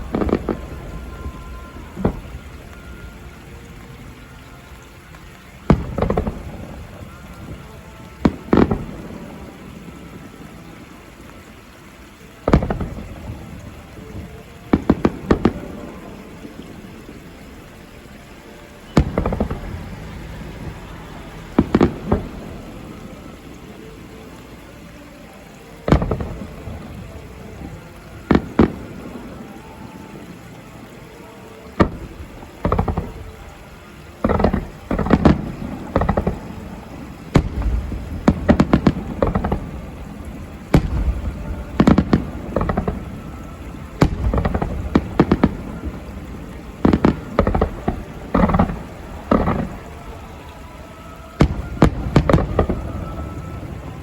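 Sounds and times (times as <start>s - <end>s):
fireworks shells bursting: 0.0s - 11.7s, 18.8s - 24.6s, 31.8s - 54.0s.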